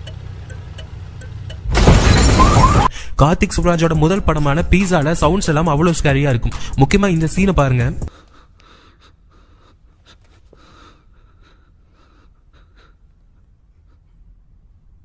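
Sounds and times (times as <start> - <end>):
low steady rumble: 0.0 - 2.8.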